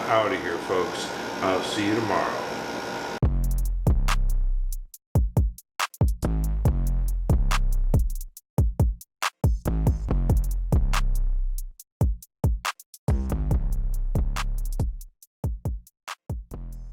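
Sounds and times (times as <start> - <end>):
electronic music with drum machine: 4.9 - 11.0, 12.0 - 16.8.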